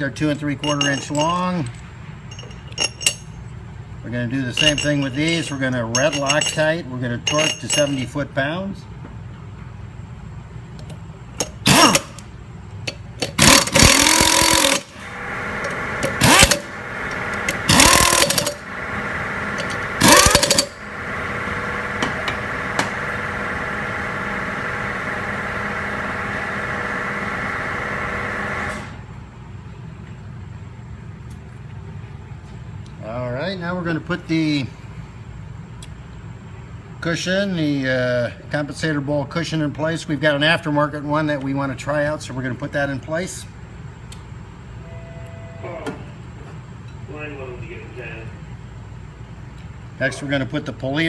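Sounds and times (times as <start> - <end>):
steady machine hum: 0.0 - 31.2, 43.4 - 51.0
power tool bursts: 11.6 - 12.2, 13.3 - 18.7, 19.6 - 20.9.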